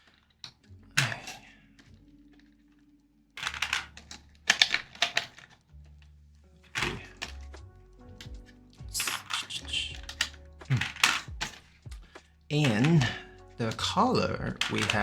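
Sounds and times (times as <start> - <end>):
plastic keyboard switches clacking: 3.4 - 5.5, 8.2 - 15.0.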